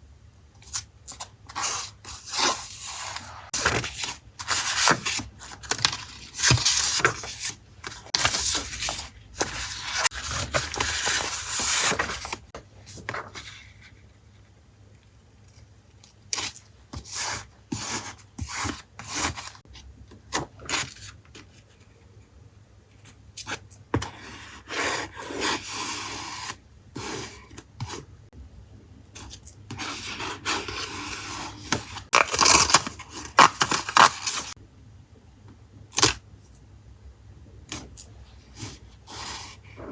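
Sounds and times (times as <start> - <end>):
paper scraping and rustling: 1.2 - 14.0.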